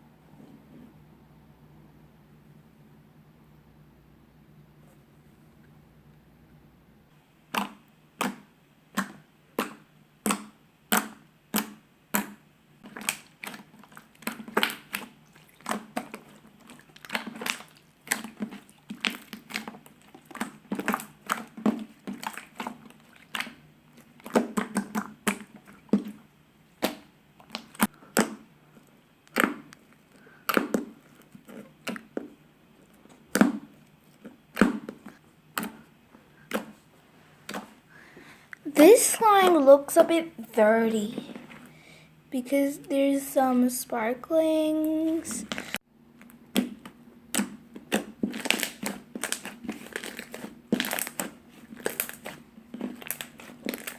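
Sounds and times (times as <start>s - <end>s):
slime squeezed by hand popping: 7.5s - 26.2s, 33.3s - 35.8s, 46.5s - 53.9s.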